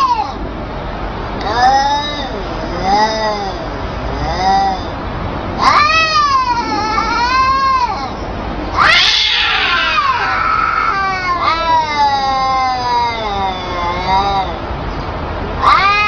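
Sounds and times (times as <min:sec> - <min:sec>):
cats yowling: 0:00.0 - 0:00.4, 0:05.6 - 0:14.7, 0:15.5 - 0:16.0
cat screeching hiss: 0:08.8 - 0:11.8.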